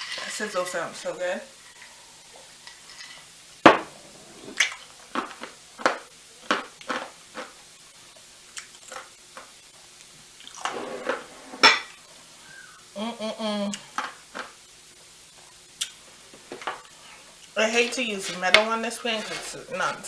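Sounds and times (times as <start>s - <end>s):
metal utensil scraping a frying pan: 17.6s - 20.0s.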